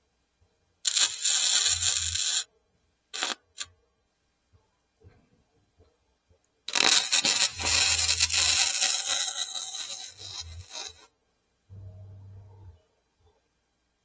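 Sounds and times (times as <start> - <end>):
arc welder crackling: 0.8 - 2.5, 3.2 - 3.7, 6.7 - 11.1
low hum: 11.7 - 13.0.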